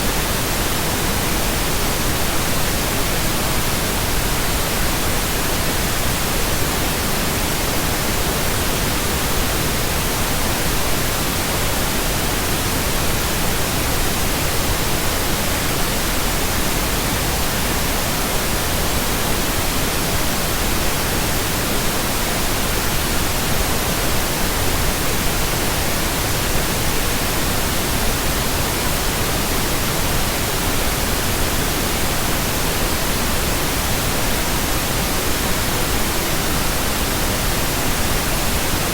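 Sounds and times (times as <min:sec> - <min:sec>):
pink noise hiss: 0:00.0 - 0:38.9.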